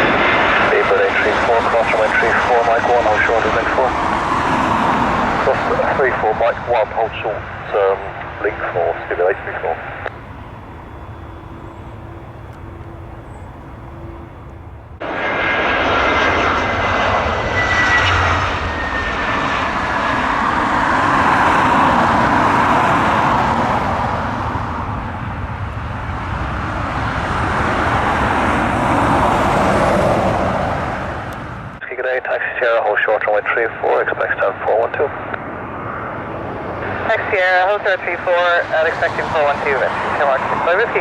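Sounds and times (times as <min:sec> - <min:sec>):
jet airliner passing: 0:00.0 - 0:41.0
radio hiss: 0:00.6 - 0:03.9, 0:05.5 - 0:14.6, 0:31.8 - 0:35.4, 0:36.8 - 0:41.0.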